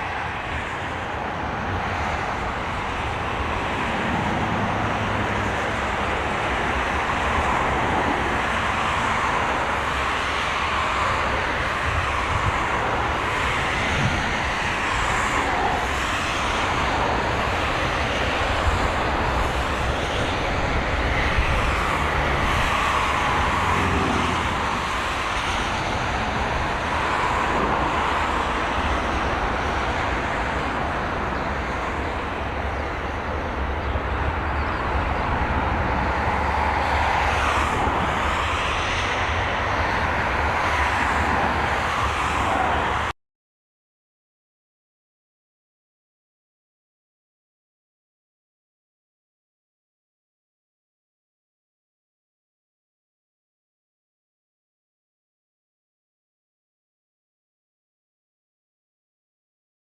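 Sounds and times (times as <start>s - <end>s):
vehicle rushing drone: 0.0s - 43.1s.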